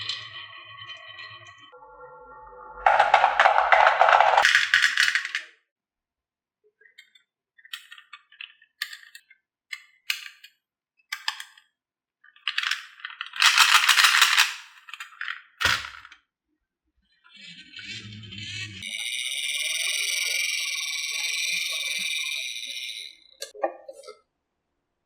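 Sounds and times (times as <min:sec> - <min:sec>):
marbles clattering down wooden run: 0:02.9 - 0:05.4, 0:13.4 - 0:16.0.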